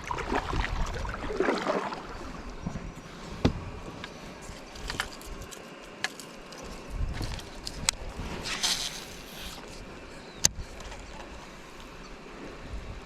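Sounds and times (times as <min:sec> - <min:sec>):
water splashing around kayak: 0:00.0 - 0:04.8.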